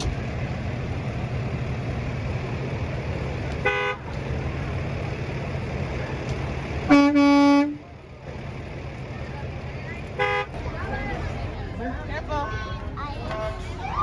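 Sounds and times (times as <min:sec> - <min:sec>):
vehicle horns honking: 0:03.6 - 0:04.1, 0:06.8 - 0:07.8, 0:10.1 - 0:10.6.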